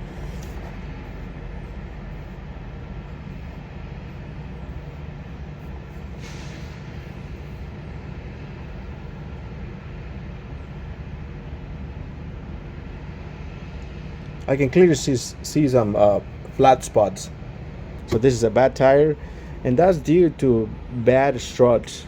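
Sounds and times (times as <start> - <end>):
low mechanical hum: 0.0 - 22.0
short hiss: 6.2 - 7.0.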